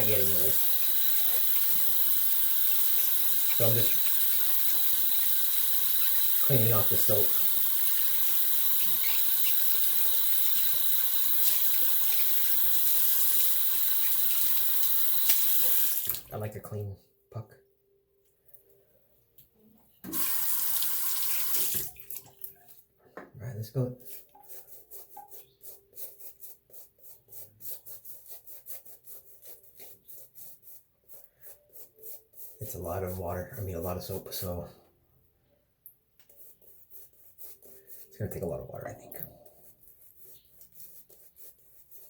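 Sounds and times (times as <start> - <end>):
shaving brush swishing in lather: 24.0 - 34.6.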